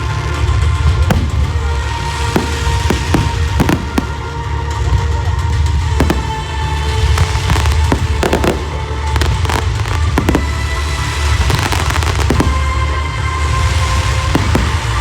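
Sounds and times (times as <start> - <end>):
fireworks bangs and crackles: 0.0 - 15.0
music with heavy bass: 0.0 - 15.0.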